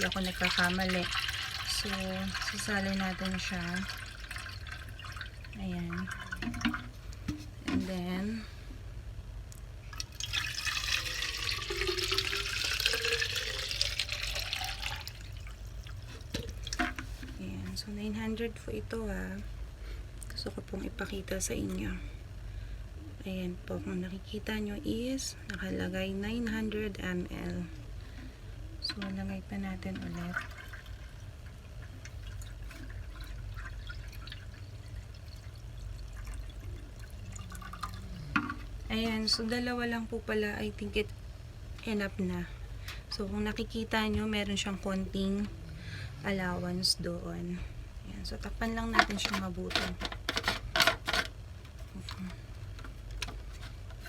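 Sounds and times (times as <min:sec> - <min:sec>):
water pouring into plastic tank: 0:00.0 - 0:07.0, 0:09.9 - 0:17.1, 0:30.0 - 0:38.8.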